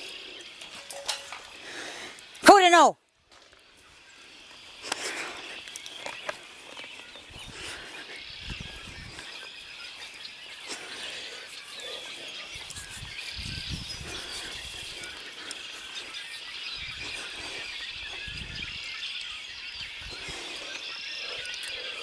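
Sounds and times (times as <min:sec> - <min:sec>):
flock of birds chattering: 0:00.0 - 0:22.0.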